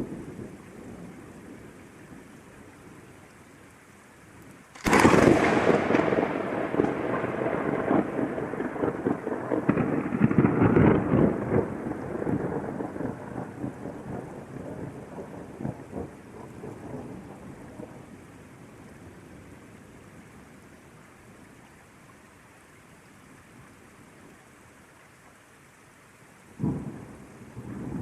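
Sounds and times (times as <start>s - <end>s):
steady rain: 0.0s - 28.0s
thunderclap and rumbling thunder: 4.8s - 18.2s, 26.6s - 28.0s.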